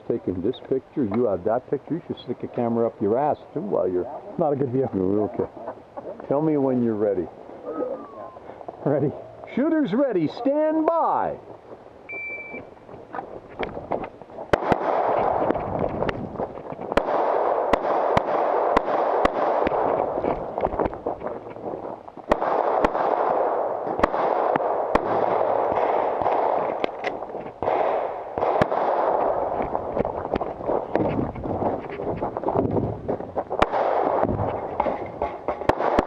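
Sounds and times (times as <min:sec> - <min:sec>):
steady rushing noise: 0:12.7 - 0:35.8
pistol shots: 0:14.5 - 0:15.6, 0:16.9 - 0:20.2, 0:22.3 - 0:30.5, 0:33.6 - 0:36.0.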